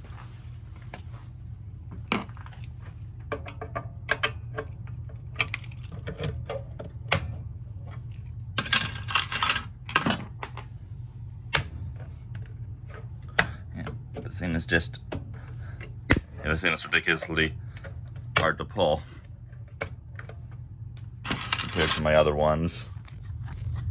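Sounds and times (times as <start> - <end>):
steady low hum: 0.0 - 23.9.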